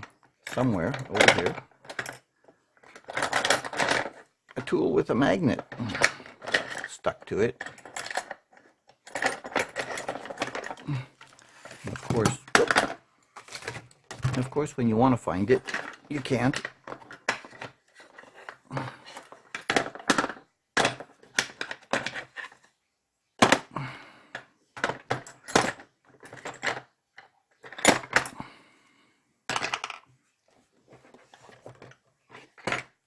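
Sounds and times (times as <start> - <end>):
metal tools clinking and clattering: 0.4 - 2.2, 2.8 - 4.7, 5.4 - 22.5.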